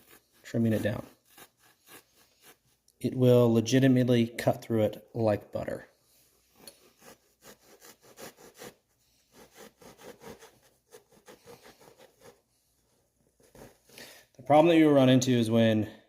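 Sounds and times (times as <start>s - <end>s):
knife sawing through foam: 0.0s - 2.9s, 6.6s - 14.0s.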